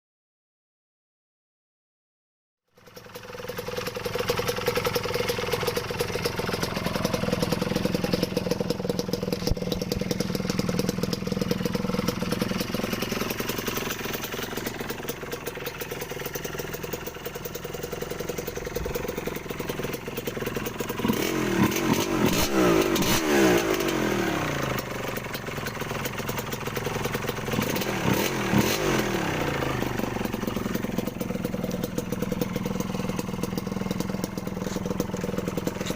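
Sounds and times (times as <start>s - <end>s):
two-stroke engine idling and revving: 2.7s - 35.9s.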